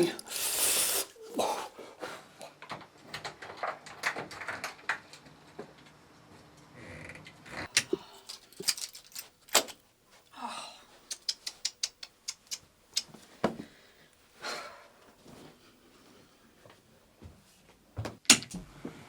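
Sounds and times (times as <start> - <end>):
sharp clicks and knocks: 11.0 - 13.2.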